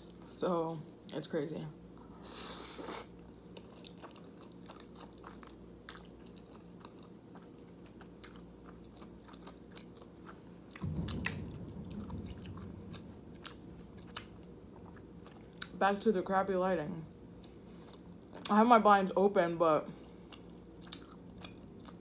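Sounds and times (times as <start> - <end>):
chewing noodles: 2.9 - 10.8, 20.3 - 22.0
low thunder rumble: 10.5 - 17.8.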